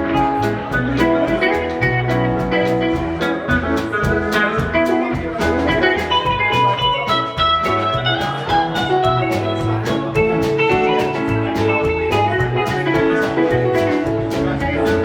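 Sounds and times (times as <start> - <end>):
rock band playing instrumental: 0.0 - 15.0.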